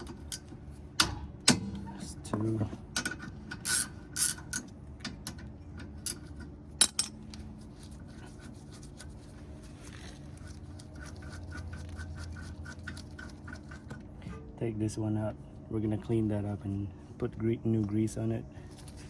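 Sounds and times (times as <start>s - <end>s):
steady low hum: 0.0s - 19.0s
metal tools clicking and scraping: 3.0s - 4.7s, 5.3s - 7.9s.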